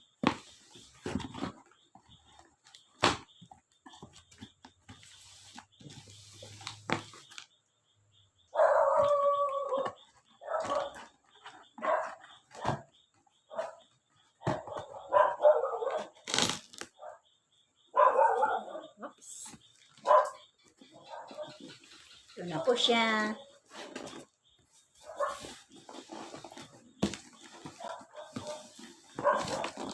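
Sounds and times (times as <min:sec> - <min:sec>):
dog barking: 0:08.5 - 0:12.9, 0:13.5 - 0:16.2, 0:17.0 - 0:17.2, 0:17.9 - 0:19.2, 0:20.0 - 0:21.8, 0:25.0 - 0:25.6, 0:27.7 - 0:29.9.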